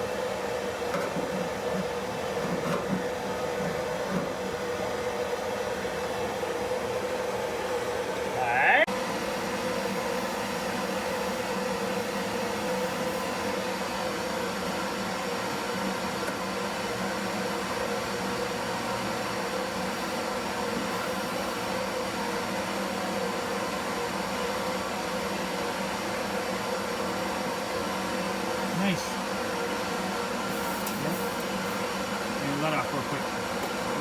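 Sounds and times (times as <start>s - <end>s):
gas torch hissing: 30.2s - 34.0s.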